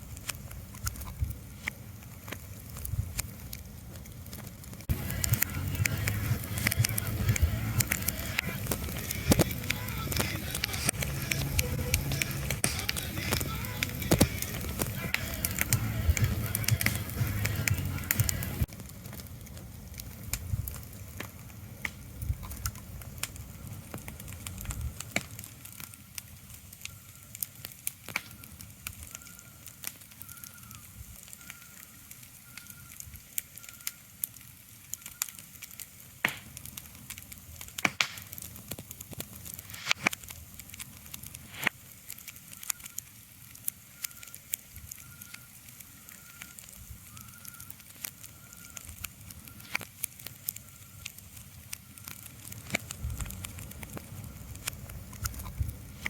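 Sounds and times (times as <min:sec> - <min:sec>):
crackling and sharp pops: 0:00.0 - 0:56.0.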